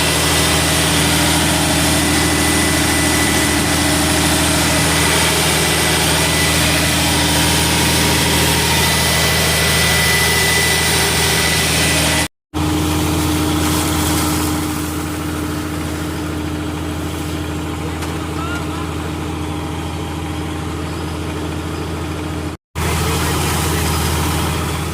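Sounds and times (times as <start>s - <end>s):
loud rushing hiss: 0.0s - 17.6s
diesel engine running: 0.0s - 24.9s.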